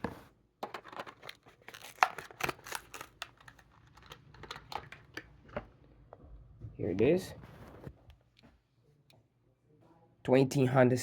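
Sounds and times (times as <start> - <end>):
plastic crinkling: 0.7 - 5.2.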